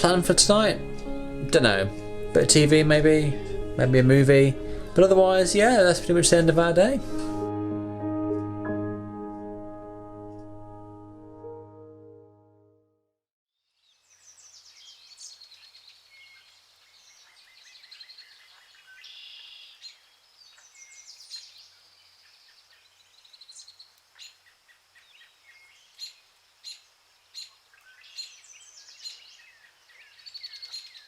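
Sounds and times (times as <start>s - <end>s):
small birds chirping and trilling: 13.7s - 31.0s.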